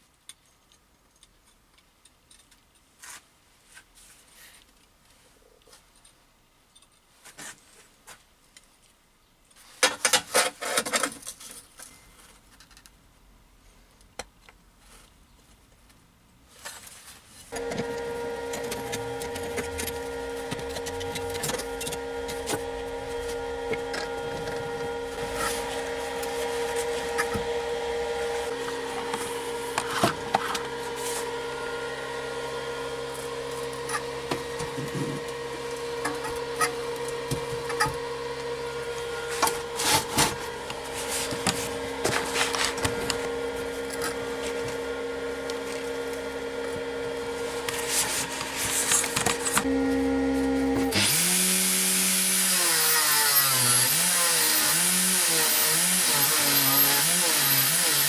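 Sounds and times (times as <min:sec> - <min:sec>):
angle grinder whine: 0:17.5 - 0:58.0.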